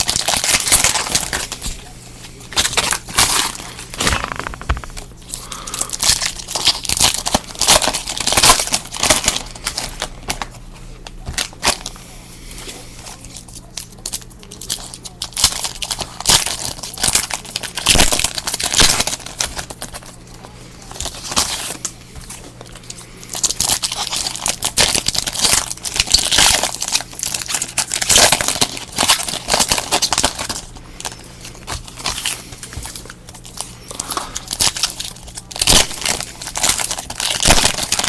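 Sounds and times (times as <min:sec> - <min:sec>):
foil wrappers tearing and crinkling: 0:00.0 - 0:01.9, 0:02.5 - 0:12.0, 0:13.1 - 0:38.0.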